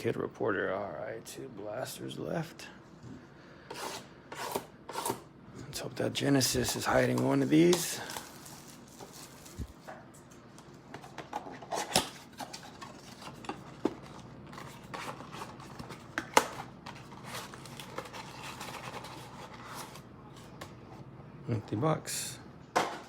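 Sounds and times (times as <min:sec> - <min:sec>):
card packs rustling and tapping: 0:06.5 - 0:09.9.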